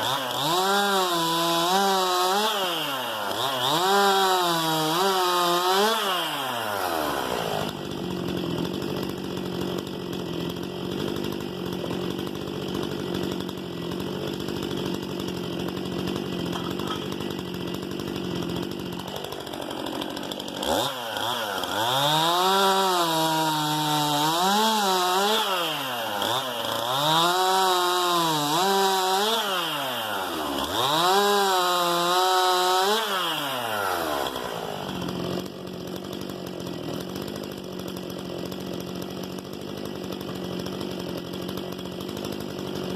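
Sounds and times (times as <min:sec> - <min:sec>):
chainsaw idling and revving: 0:00.0 - 0:42.9.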